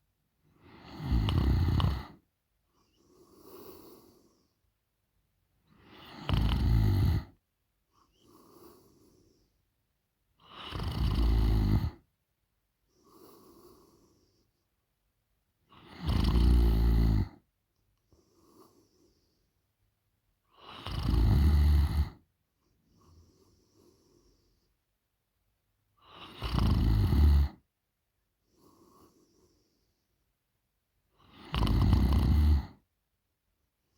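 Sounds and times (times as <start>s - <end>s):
soft breaths: 0.5s - 4.8s, 7.2s - 12.1s, 12.8s - 15.0s, 16.5s - 19.8s, 21.8s - 25.0s, 27.6s - 30.4s
woman snoring: 0.7s - 2.2s, 5.8s - 7.4s, 10.4s - 12.0s, 15.8s - 17.4s, 20.6s - 22.2s, 26.0s - 27.6s, 31.2s - 32.8s.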